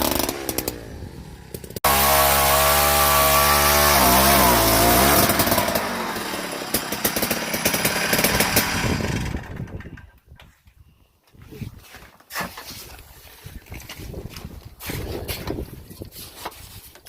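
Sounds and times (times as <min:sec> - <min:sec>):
ice auger two-stroke engine running: 0:02.8 - 0:10.1.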